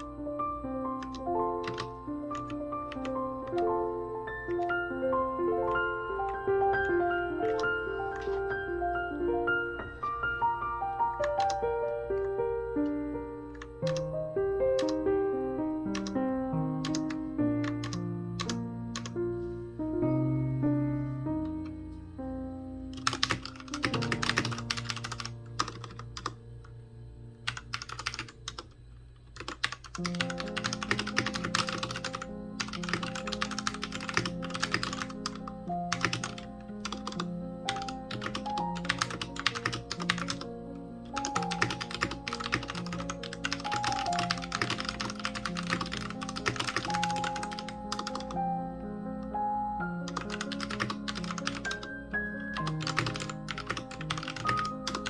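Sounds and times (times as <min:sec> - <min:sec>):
mechanical keyboard typing: 0:01.0 - 0:03.8, 0:04.4 - 0:04.8, 0:05.6 - 0:08.7, 0:11.0 - 0:14.1, 0:14.8 - 0:15.0, 0:15.9 - 0:16.2, 0:16.8 - 0:19.2, 0:23.0 - 0:26.4, 0:27.5 - 0:28.7, 0:29.3 - 0:40.5, 0:41.1 - 0:48.4, 0:50.0 - 0:55.0.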